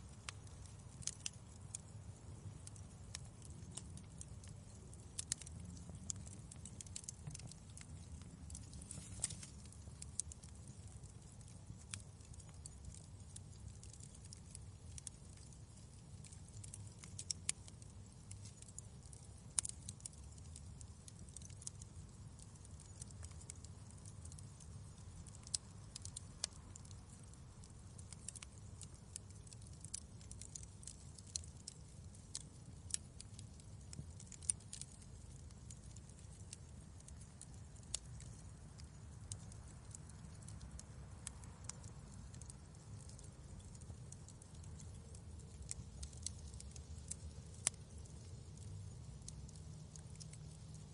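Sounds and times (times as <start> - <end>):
wood fire crackling: 0.0 - 50.9.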